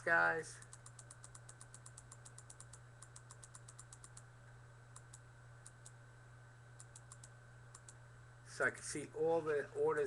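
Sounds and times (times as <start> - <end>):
computer typing and clicking: 0.5 - 4.3, 4.9 - 6.0, 6.8 - 8.0.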